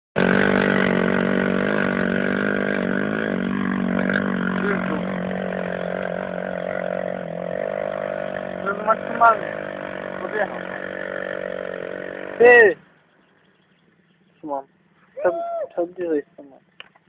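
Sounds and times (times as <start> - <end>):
quad bike engine running: 0.2 - 12.8.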